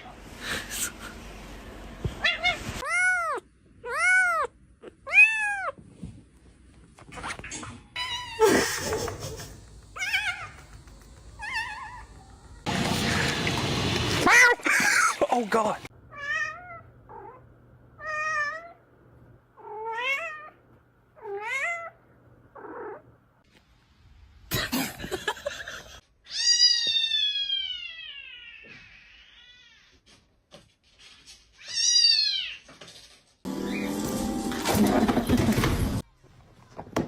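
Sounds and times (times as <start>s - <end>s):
cat meowing: 2.2s - 5.8s.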